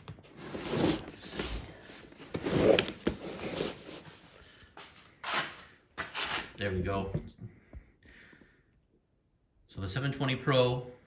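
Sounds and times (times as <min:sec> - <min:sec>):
cardboard box scraping: 0:00.2 - 0:04.2.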